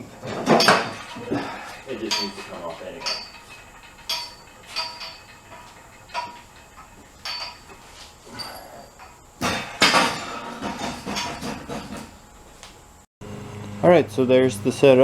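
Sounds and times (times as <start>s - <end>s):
metal tools clinking: 0.0s - 12.0s
metal parts clattering: 0.1s - 7.8s.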